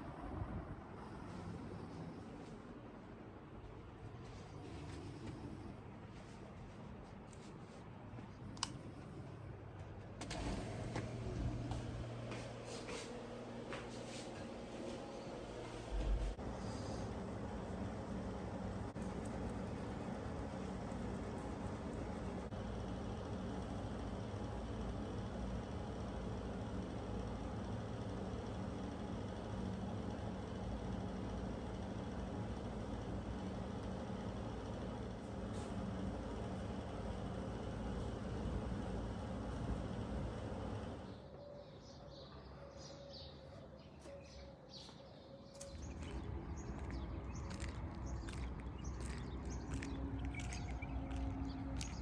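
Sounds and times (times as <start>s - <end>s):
small birds chirping: 41.2s - 52.0s
low rumble: 45.6s - 52.0s.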